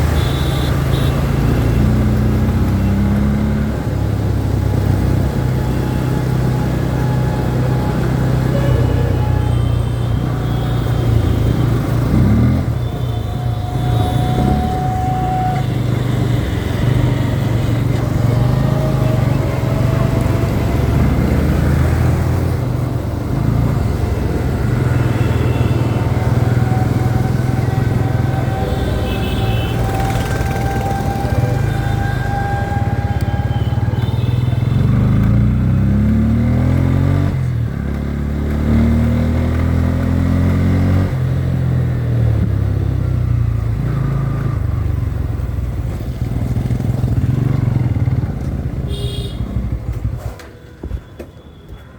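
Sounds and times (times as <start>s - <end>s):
motorcycle engine accelerating: 11.3s - 13.0s, 16.6s - 50.3s.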